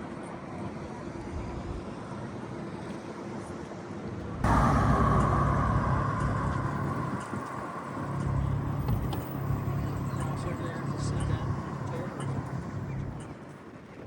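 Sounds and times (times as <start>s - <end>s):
engine and traffic noise: 0.0s - 14.0s
higher droning tone: 4.4s - 13.5s
low hum: 4.4s - 13.5s.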